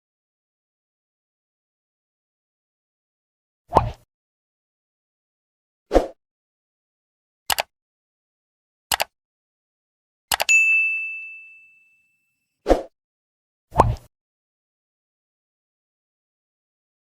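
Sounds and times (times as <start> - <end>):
mouse clicks: 8.9 - 9.1
notification bell ding: 10.4 - 12.0.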